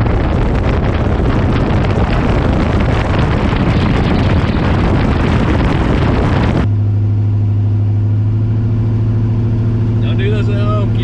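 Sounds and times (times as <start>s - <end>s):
wind noise on microphone: 0.0s - 6.7s
car engine under load: 0.0s - 11.0s
steady engine drone: 0.0s - 11.0s.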